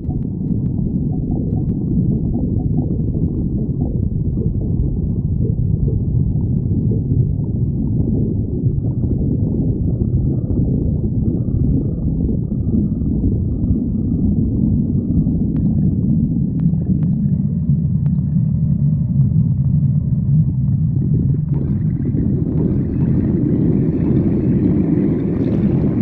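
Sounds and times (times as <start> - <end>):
stomach growling: 0.0 - 26.0.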